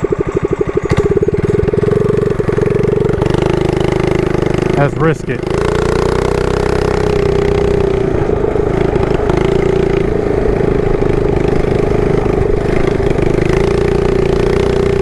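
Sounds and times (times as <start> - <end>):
small engine running: 0.0 - 15.0.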